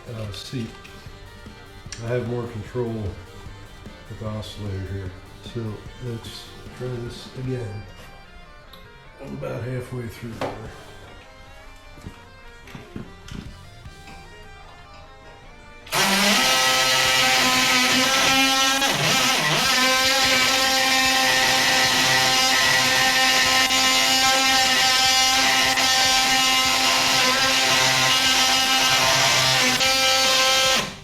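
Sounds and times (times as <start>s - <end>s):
oscillating multi-tool cutting screw: 15.9s - 31.0s.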